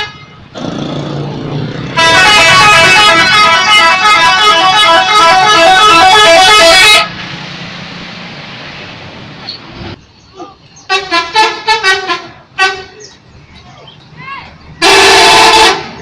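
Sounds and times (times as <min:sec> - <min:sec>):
multi-tone bus horn tune: 0:00.0 - 0:00.6, 0:01.9 - 0:07.1, 0:10.9 - 0:13.0, 0:14.8 - 0:16.0
steady road noise: 0:00.0 - 0:16.0.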